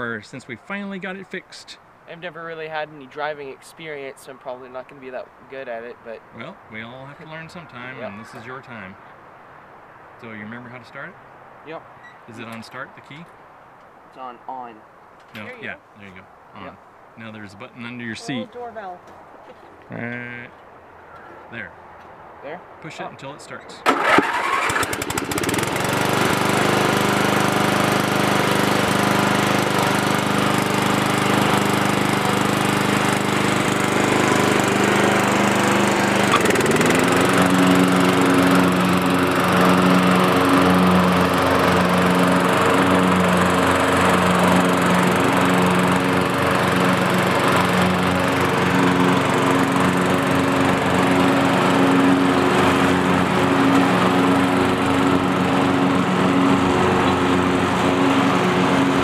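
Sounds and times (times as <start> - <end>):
riding lawn mower engine: 23.8 - 59.0.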